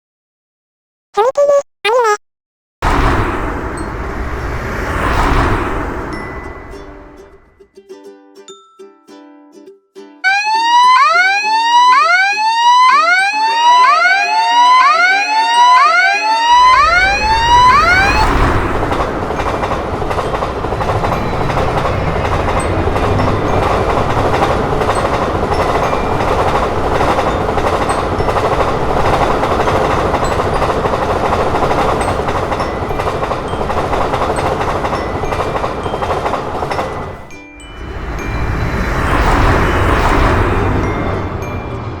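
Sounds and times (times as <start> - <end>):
rising electronic whoop warning: 10.3 - 18.6
train wheels on rails: 15.4 - 42.0.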